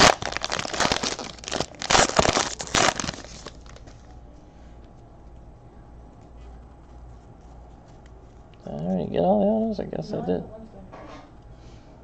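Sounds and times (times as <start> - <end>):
wrappers tearing and crinkling: 0.0 - 4.2.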